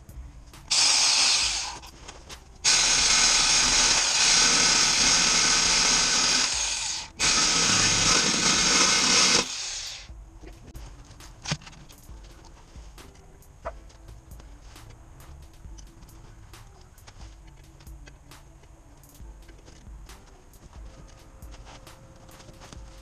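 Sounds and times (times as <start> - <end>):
power tool cutting steel pipe: 0.7 - 1.9, 2.6 - 10.1.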